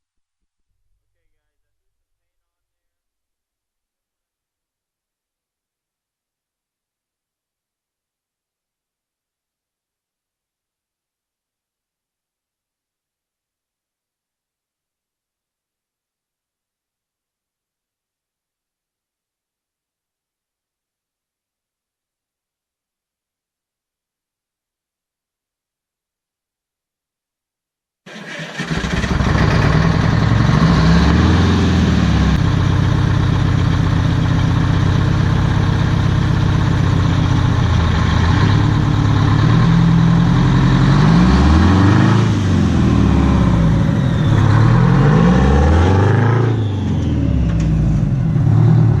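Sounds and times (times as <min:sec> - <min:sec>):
truck engine revving: 0:28.1 - 0:49.0.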